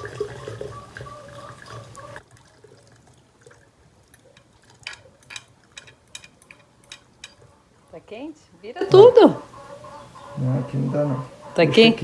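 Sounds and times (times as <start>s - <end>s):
liquid pouring through strainer: 0.0s - 7.3s.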